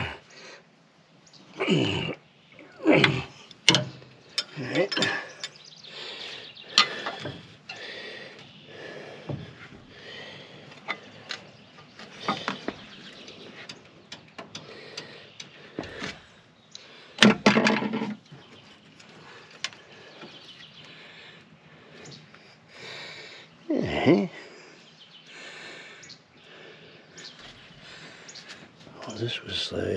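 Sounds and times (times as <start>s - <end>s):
hand tools clinking on metal: 2.9s - 5.7s, 6.7s - 7.8s.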